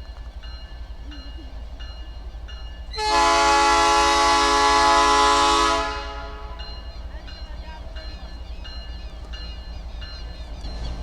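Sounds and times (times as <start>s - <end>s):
locomotive air horn blast: 3.0s - 6.6s.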